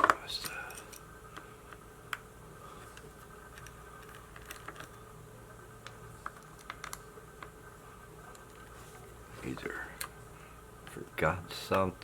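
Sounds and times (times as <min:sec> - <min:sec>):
faint steady hum: 0:00.0 - 0:12.0
small parts clicking and tapping: 0:02.9 - 0:05.0, 0:05.8 - 0:07.6.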